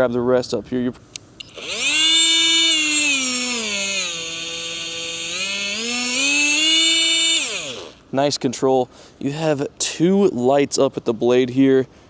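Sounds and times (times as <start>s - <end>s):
oscillating multi-tool whining: 1.4s - 8.0s.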